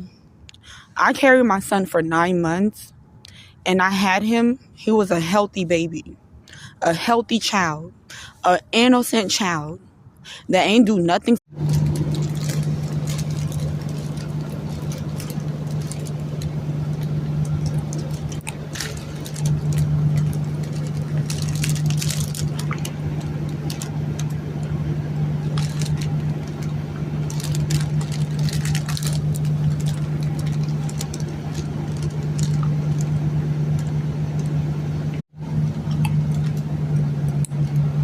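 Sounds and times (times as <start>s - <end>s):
steady low hum: 11.5s - 38.0s
rustles and clicks: 11.6s - 24.7s, 25.4s - 34.6s.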